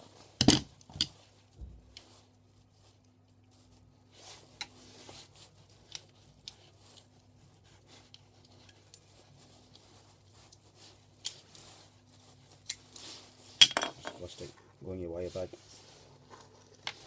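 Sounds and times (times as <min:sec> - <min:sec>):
quiet rustling: 0:00.0 - 0:17.0.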